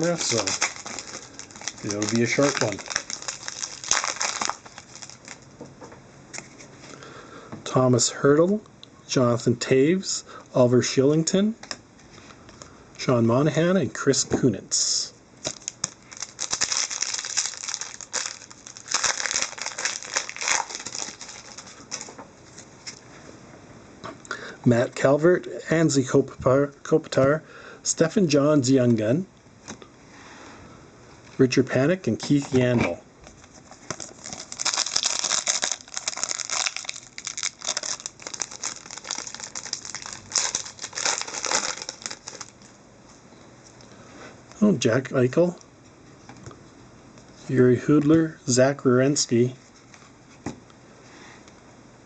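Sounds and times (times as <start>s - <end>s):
foil wrapper crinkling: 0.0s - 5.5s, 15.4s - 23.0s, 33.3s - 42.7s.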